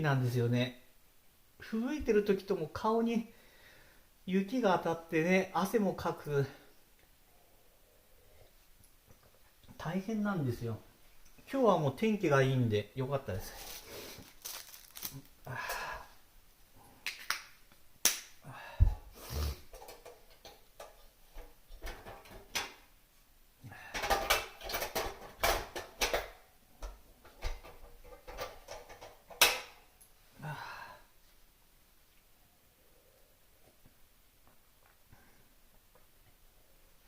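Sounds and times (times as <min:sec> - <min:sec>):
packaging rustling: 0:13.3 - 0:15.5.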